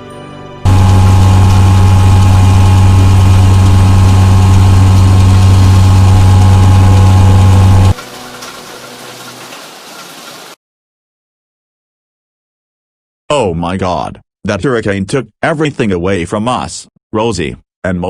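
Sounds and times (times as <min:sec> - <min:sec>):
distorted hurricane rumble: 0:00.7 - 0:08.0
rushing noise: 0:00.7 - 0:08.3.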